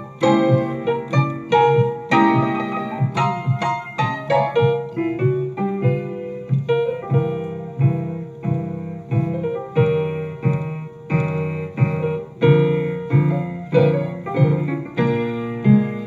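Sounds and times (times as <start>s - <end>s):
blues piano chords: 0.0s - 16.0s.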